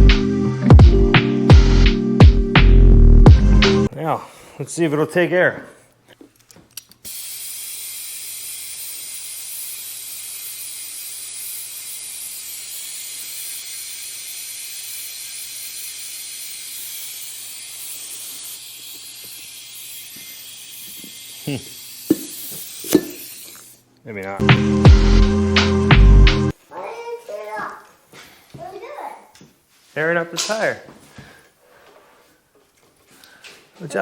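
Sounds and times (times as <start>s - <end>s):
compressed air hissing: 1.6s - 2.0s, 7.0s - 23.8s.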